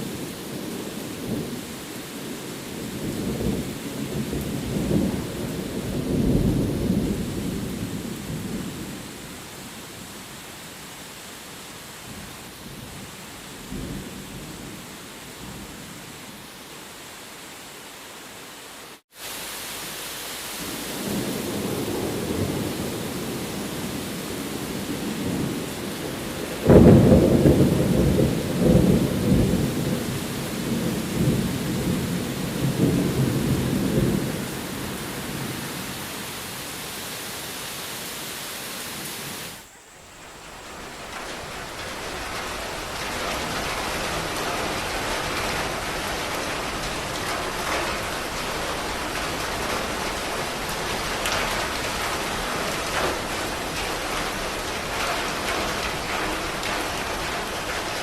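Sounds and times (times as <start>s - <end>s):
heavy rain falling: 0.0s - 58.0s
thunder rumbling: 20.6s - 35.9s, 40.2s - 58.0s
loud thunder clap: 24.6s - 34.5s, 40.9s - 58.0s.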